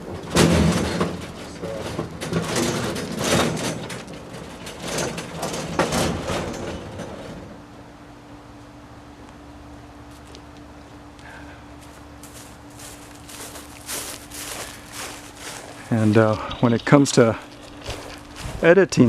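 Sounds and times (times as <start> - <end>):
metal knocks and clunks: 0.0 - 7.6
steel tool box rumbling and scraping: 0.0 - 7.6, 12.8 - 18.8.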